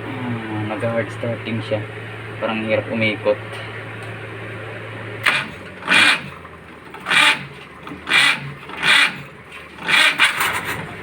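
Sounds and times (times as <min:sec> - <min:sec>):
engine struggling to start: 0:05.2 - 0:11.0.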